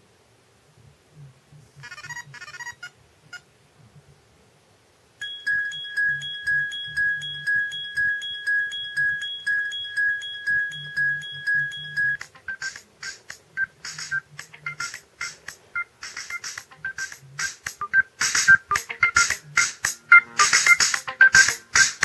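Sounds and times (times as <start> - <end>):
pulsing high ringtone: 5.2 - 21.9
choppy electronic beeps and clicks: 5.2 - 22.0.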